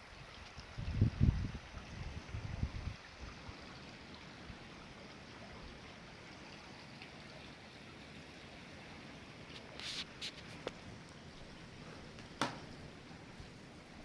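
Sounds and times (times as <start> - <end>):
creek water flowing: 0.0 - 14.0
short rustle: 9.5 - 13.6.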